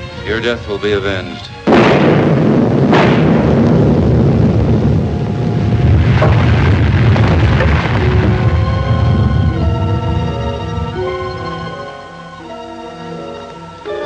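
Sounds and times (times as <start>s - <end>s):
music: 0.0s - 2.9s, 7.4s - 14.0s
explosion blast: 1.7s - 11.0s
heavy rumble: 1.7s - 11.8s.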